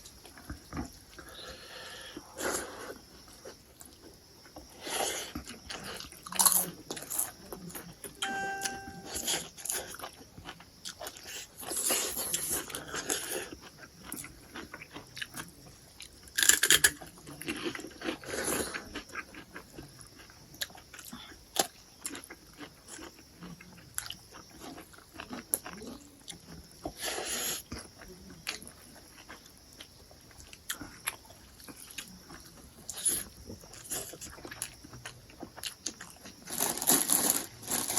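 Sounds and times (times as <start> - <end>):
brief pitched ringing tone: 8.2 - 9.3
chewing and biting crab: 9.4 - 37.9.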